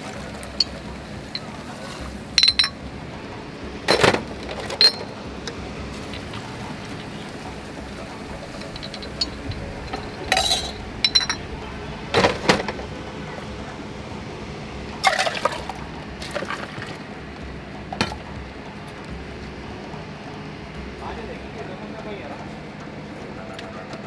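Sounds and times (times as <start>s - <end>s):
glassware clinking: 0.0s - 5.2s, 5.9s - 12.9s, 15.0s - 17.1s, 17.9s - 18.3s
liquid splashing: 0.0s - 13.5s, 15.0s - 18.5s.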